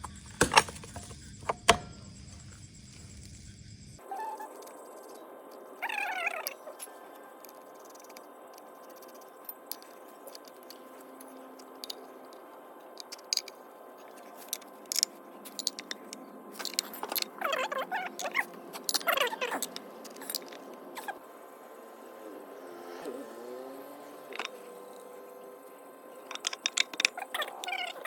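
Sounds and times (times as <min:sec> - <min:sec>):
metal tools clinking: 0:14.4 - 0:17.4, 0:18.2 - 0:21.1, 0:26.2 - 0:28.0.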